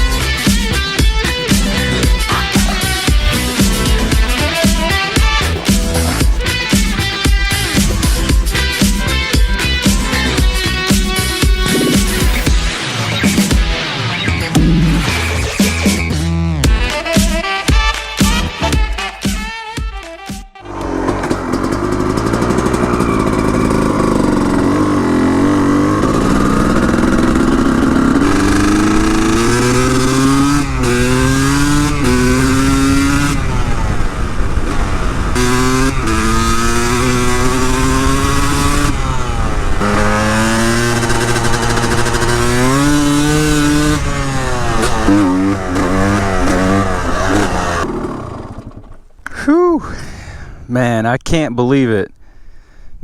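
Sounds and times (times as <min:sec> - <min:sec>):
motorcycle engine accelerating: 0:00.0 - 0:16.9, 0:20.6 - 0:49.1.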